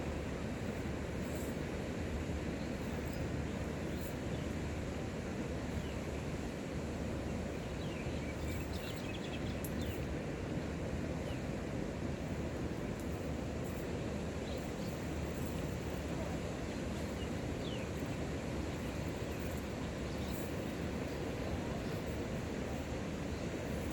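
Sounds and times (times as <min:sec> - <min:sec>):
low rumbling outdoor noise: 0:00.0 - 0:23.9.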